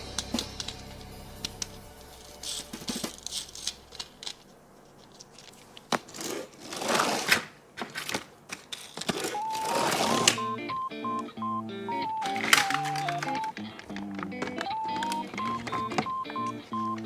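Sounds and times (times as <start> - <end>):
toy packaging clicks: 2.4 - 6.3, 7.2 - 10.5, 12.0 - 17.0
packaging crinkling: 2.4 - 10.4, 12.2 - 15.8.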